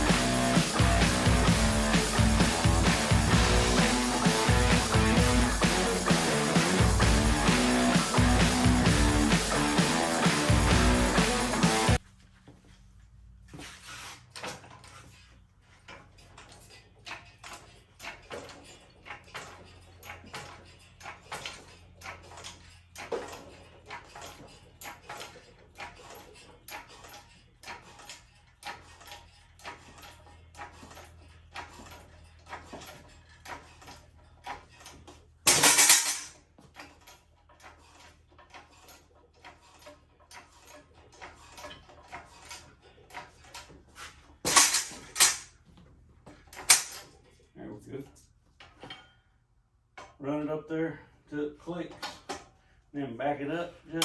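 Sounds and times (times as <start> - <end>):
metallic clicks and clinks: 15.9 - 43.6.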